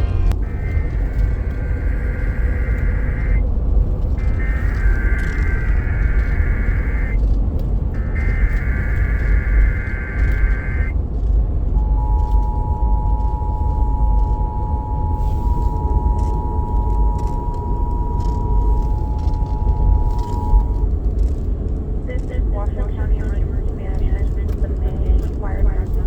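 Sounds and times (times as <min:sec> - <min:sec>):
two-tone attention signal: 0:00.0 - 0:03.4, 0:04.2 - 0:07.2, 0:08.0 - 0:10.9, 0:11.8 - 0:20.9
warbling digital header tones: 0:00.0 - 0:03.4, 0:04.2 - 0:07.2, 0:08.0 - 0:10.9, 0:11.8 - 0:20.9
car road rumble: 0:00.0 - 0:26.0.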